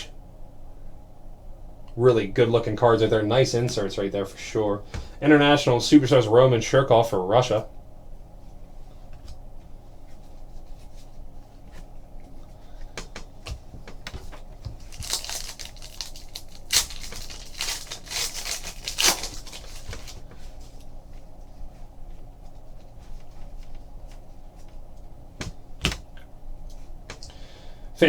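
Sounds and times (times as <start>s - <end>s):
foil wrapper tearing and crinkling: 14.8s - 20.2s.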